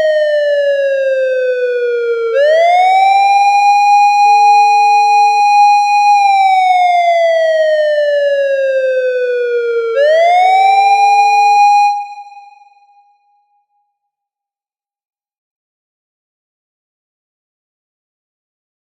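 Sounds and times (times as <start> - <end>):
police siren wailing: 0.0 - 12.9.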